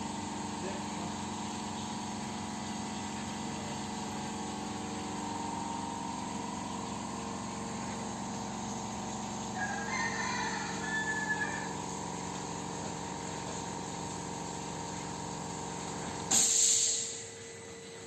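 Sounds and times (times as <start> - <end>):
machine humming: 0.0 - 16.3
loud hiss burst: 16.3 - 17.2.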